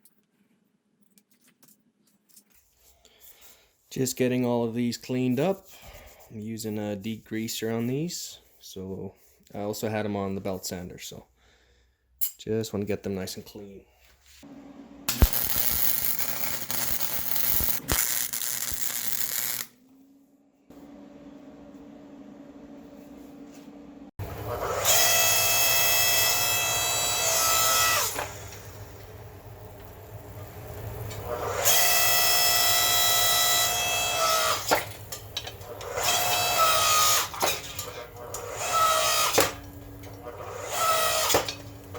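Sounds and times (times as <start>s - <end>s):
metal pieces clicking and knocking: 15.1s - 19.7s
power tool grinding metal: 15.1s - 19.7s, 24.2s - 41.9s.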